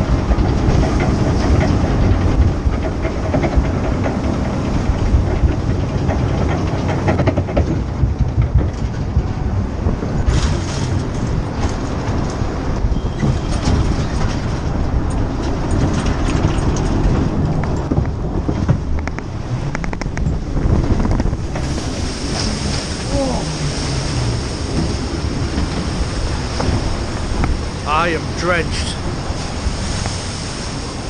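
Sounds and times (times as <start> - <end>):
ride boat rumbling on track: 0.0 - 31.0.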